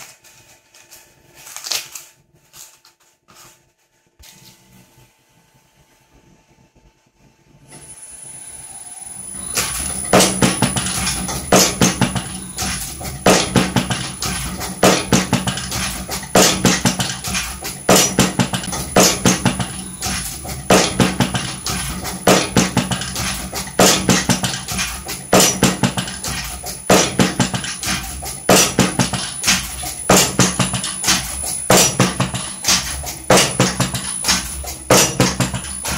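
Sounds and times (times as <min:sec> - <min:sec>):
music with percussive beat: 0:09.2 - 0:35.9.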